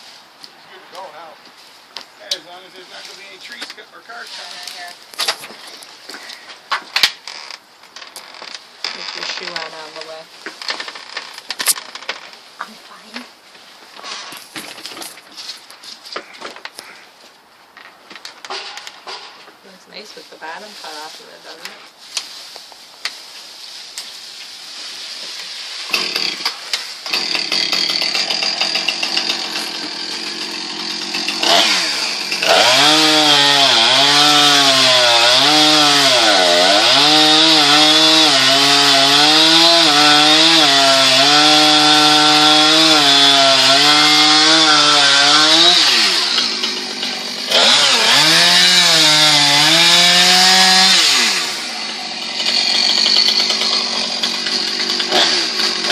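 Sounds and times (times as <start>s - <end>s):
chainsaw cutting wood: 8.8s - 11.8s, 25.9s - 55.9s.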